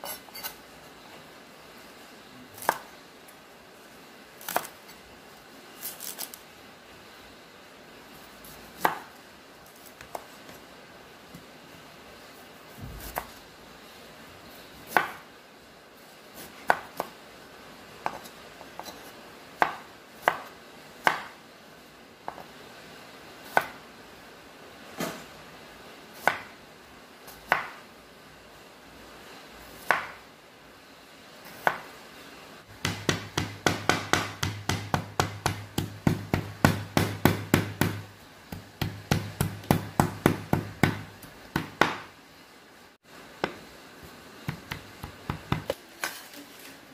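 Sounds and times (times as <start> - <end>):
knife chopping on cutting board: 32.8 - 42.1, 44.5 - 45.8.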